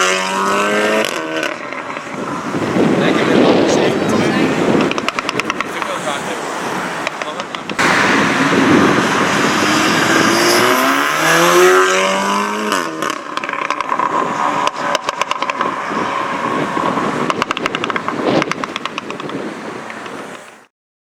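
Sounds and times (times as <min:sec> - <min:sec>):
car engine accelerating hard: 0:00.0 - 0:18.7
exhaust crackles and pops: 0:03.0 - 0:06.0, 0:12.7 - 0:20.7.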